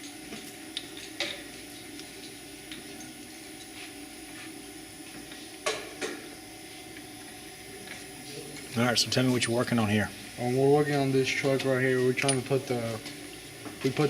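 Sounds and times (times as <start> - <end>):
steady background hum: 0.0 - 14.0
tools clinking on metal: 12.2 - 12.6.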